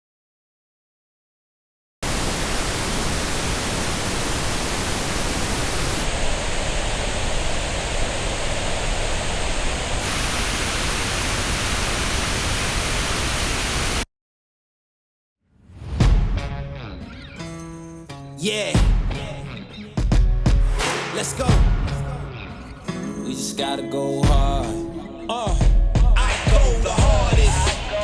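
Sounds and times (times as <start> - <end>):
pink noise test signal: 2.0 - 14.1.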